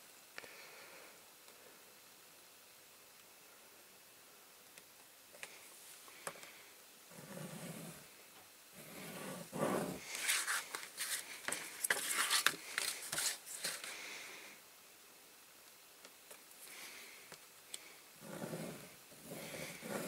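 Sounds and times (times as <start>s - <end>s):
card rubbing and scraping: 7.1s - 8.0s, 8.8s - 13.9s, 18.2s - 20.0s.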